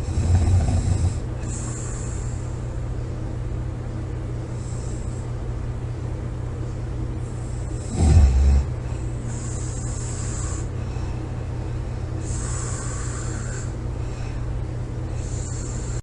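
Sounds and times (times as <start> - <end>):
woman snoring: 0.0 - 2.4, 7.8 - 10.7, 12.2 - 13.8, 15.1 - 16.0
hissy breaths: 0.0 - 2.9, 4.4 - 5.5, 6.7 - 16.0
steady low hum: 0.0 - 16.0.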